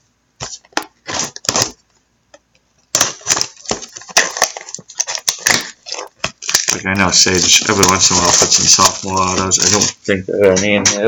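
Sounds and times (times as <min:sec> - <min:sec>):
packaging crinkling and tearing: 0:00.5 - 0:01.8, 0:02.9 - 0:10.0.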